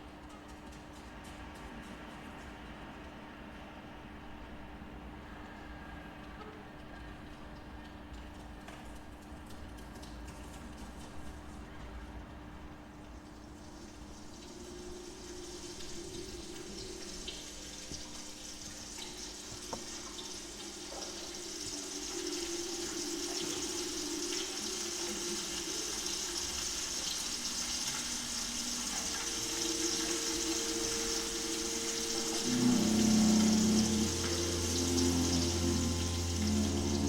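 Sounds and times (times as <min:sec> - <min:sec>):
ensemble sustained low tones: 0:27.9 - 0:37.0
ocean rushing hiss: 0:28.1 - 0:37.0.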